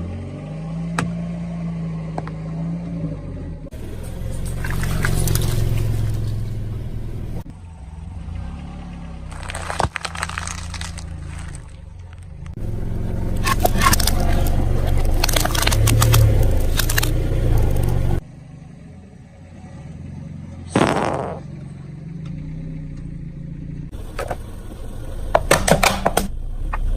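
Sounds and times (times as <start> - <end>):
car engine running low: 0.0 - 26.9
crackling and popping: 9.3 - 12.6, 13.3 - 18.2
tyre crushing objects: 9.3 - 12.6, 13.3 - 18.1.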